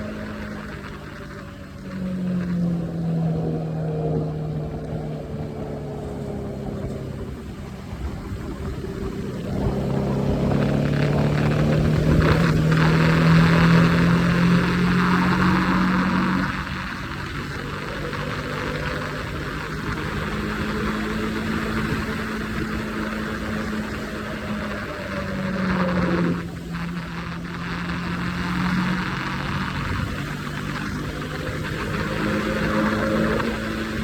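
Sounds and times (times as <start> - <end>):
motorcycle engine running: 0.0 - 34.0.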